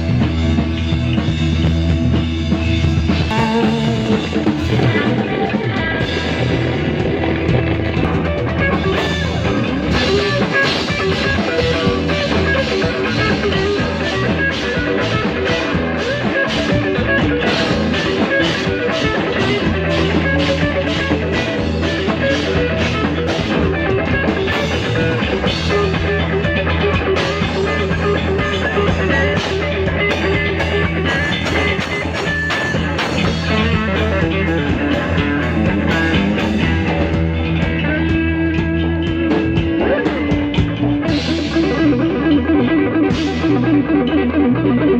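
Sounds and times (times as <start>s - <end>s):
bass line: 0.0s - 44.9s
drum kit beat: 0.0s - 44.9s
electric guitar: 0.0s - 44.9s.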